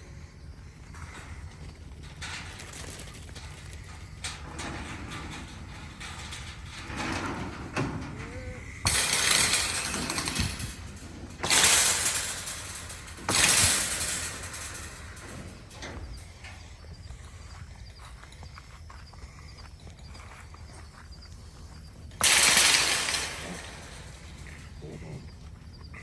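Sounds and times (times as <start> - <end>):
hooves scuffling on metal: 0.8 - 26.0
crashes with rattling metal: 1.9 - 16.6, 22.0 - 25.7.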